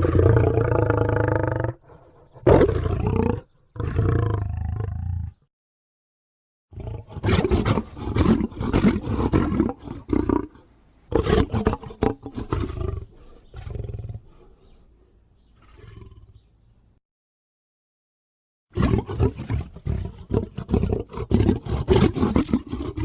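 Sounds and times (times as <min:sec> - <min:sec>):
lion roaring: 0:00.0 - 0:05.4, 0:06.7 - 0:14.6, 0:15.6 - 0:16.4, 0:18.8 - 0:23.0.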